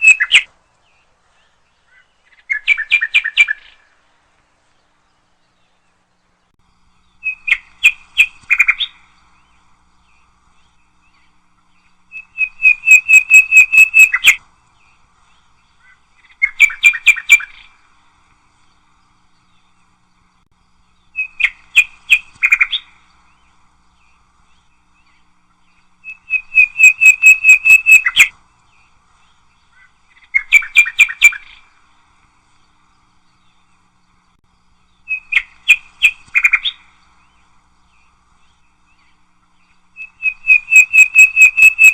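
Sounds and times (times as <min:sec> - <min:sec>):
nightingale singing: 0:00.0 - 0:41.9.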